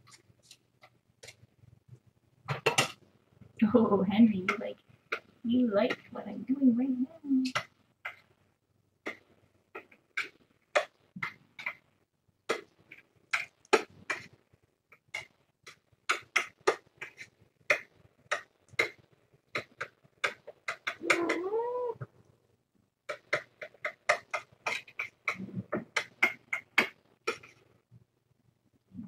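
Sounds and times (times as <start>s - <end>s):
cat meowing: 21.0s - 22.0s.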